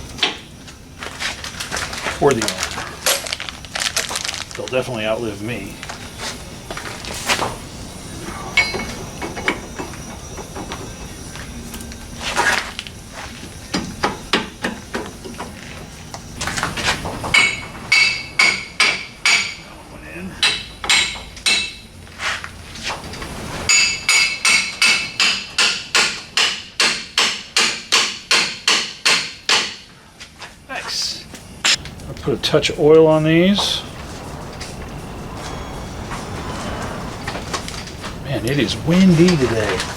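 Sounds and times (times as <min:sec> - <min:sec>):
hammer striking steel: 0:08.6 - 0:09.6, 0:17.4 - 0:19.6, 0:20.4 - 0:21.8, 0:23.7 - 0:29.9.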